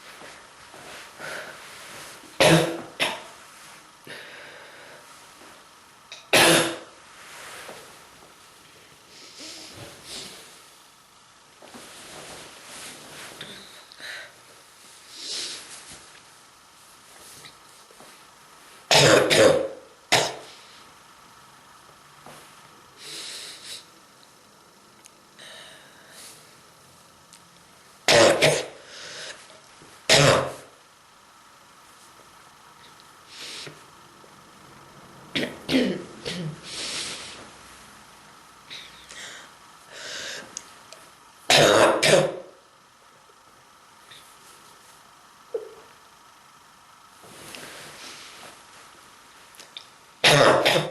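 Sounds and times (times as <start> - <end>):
person breathing: 0.8 - 2.0, 4.0 - 5.1, 9.1 - 10.6, 13.5 - 15.8, 23.0 - 23.9, 25.4 - 26.5, 28.8 - 29.5, 33.3 - 33.8, 36.6 - 37.5, 38.7 - 40.6
person coughing hard: 2.4 - 3.3, 6.3 - 6.9, 18.9 - 20.5, 28.1 - 28.8, 30.1 - 30.6, 35.4 - 36.6, 41.5 - 42.5, 50.2 - 50.9.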